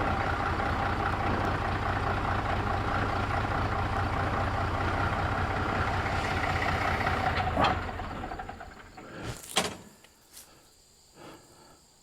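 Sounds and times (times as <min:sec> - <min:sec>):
engine idling and shutting off: 0:00.0 - 0:10.0
sharp clunks: 0:08.9 - 0:10.1.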